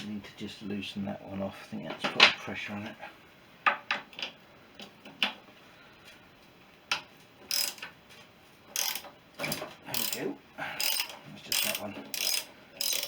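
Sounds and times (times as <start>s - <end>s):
ratchet wrench clicking: 7.5s - 7.9s, 8.8s - 9.1s, 9.9s - 10.2s, 10.8s - 13.0s.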